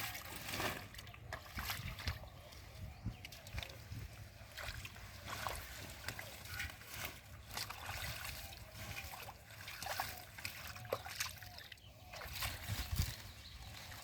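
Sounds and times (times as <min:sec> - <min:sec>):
hands splashing in muddy water: 0:03.2 - 0:14.0.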